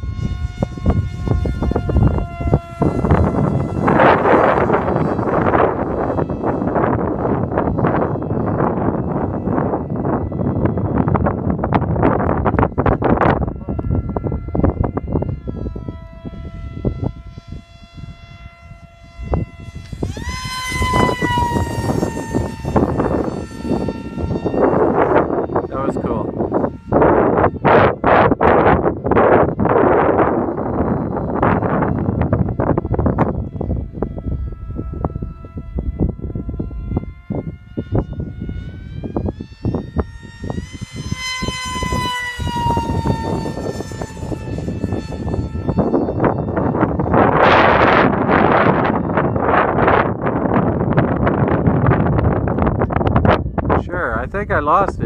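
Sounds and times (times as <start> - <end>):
electric model plane whining: 0.0 - 55.0
wind rumbling on microphone: 0.0 - 55.0.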